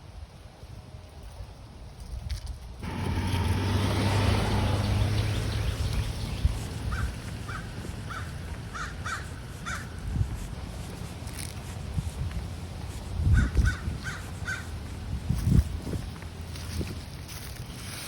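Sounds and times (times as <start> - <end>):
wind gusting with low rumble: 0.0 - 18.0
bird repeated calls: 4.8 - 10.0.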